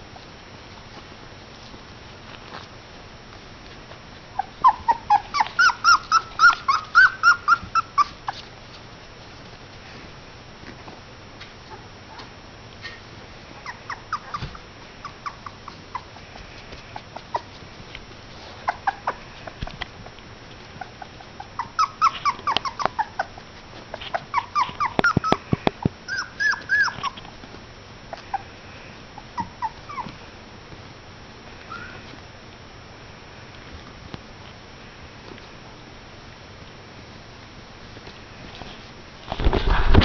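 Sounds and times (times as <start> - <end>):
puppies yipping and whining: 4.3 - 8.6, 12.9 - 17.8, 18.4 - 19.7, 20.6 - 30.3, 31.6 - 32.2.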